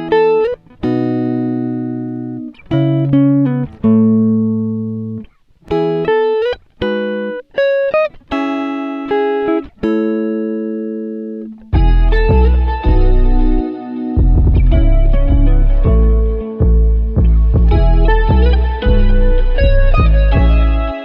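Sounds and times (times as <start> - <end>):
guitar chords ringing: 0.0 - 21.0.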